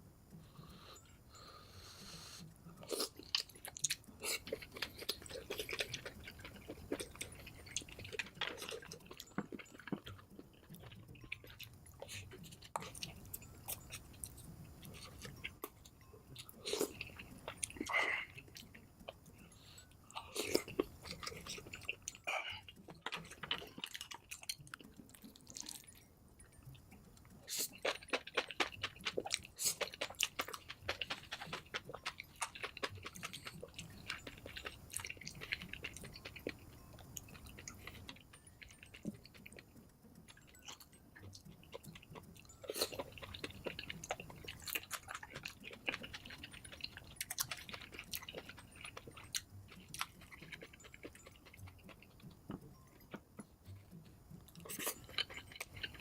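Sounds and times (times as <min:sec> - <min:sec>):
chewing and biting: 0:02.7 - 0:56.0.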